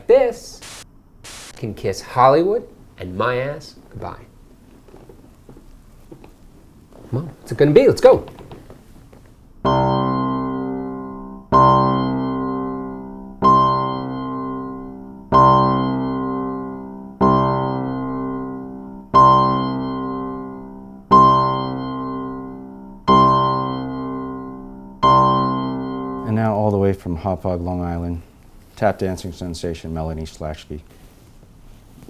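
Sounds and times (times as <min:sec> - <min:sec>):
piano chord struck: 0:09.7 - 0:26.7.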